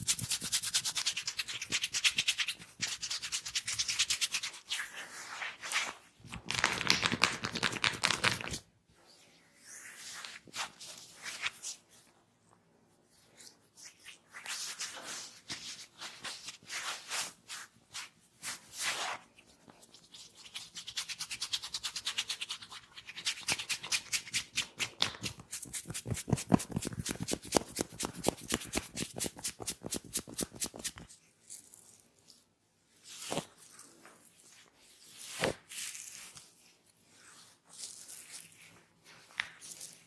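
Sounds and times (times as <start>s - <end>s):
scratching and rubbing on scalp: 0.0s - 6.0s.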